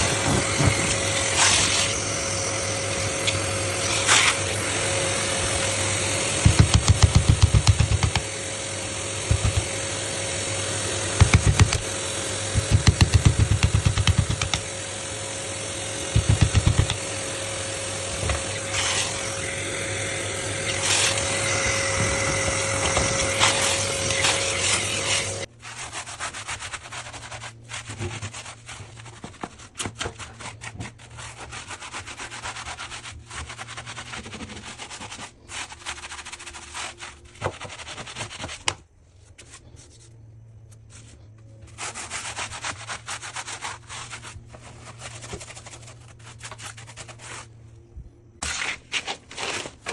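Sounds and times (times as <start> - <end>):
rubbing and scraping on wood: 0.0 - 8.4, 9.0 - 10.2, 10.9 - 14.7, 16.0 - 19.6, 20.4 - 47.6
floor sander running: 0.0 - 25.5.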